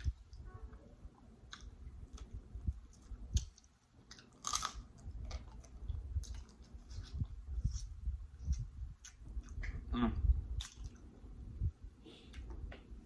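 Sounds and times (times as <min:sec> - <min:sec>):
crunching crackles: 0:01.5 - 0:07.8
chewing and biting food: 0:01.5 - 0:09.7.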